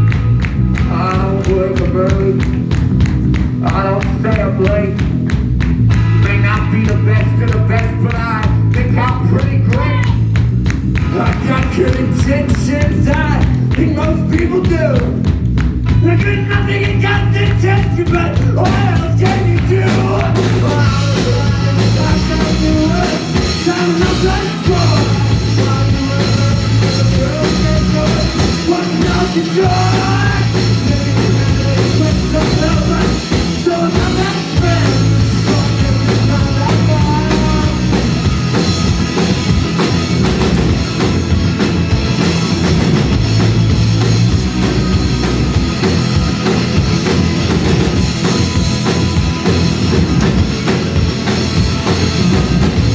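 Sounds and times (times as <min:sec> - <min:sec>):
bass line: 0:00.0 - 0:52.9
drums: 0:00.0 - 0:52.9
rock band playing: 0:00.0 - 0:52.9
person singing: 0:00.8 - 0:02.6, 0:06.1 - 0:10.3, 0:11.0 - 0:15.2, 0:16.0 - 0:38.3.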